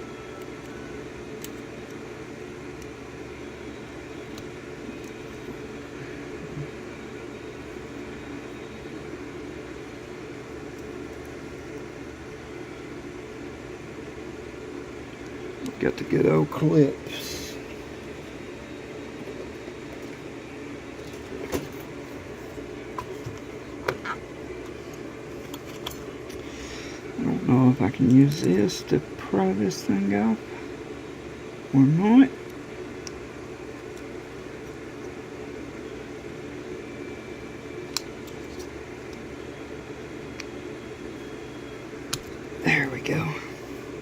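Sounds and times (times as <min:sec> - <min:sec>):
low background hum: 0:00.0 - 0:44.0.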